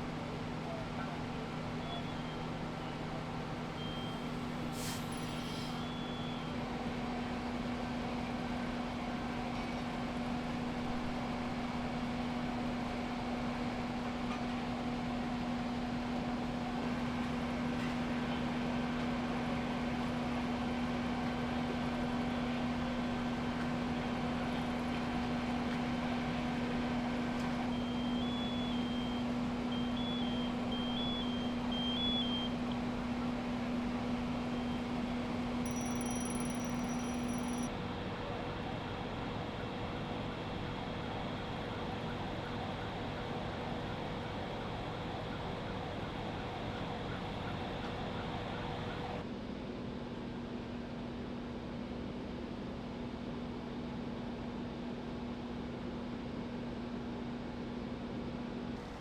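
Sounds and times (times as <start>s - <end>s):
fire engine humming: 0.0s - 49.2s
brief hiss: 4.0s - 6.0s
short electronic beeps: 35.7s - 37.7s.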